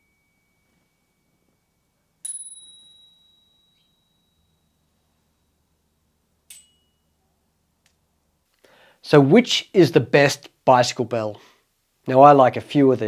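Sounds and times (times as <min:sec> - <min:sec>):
bicycle bell ringing: 0:02.2 - 0:05.2.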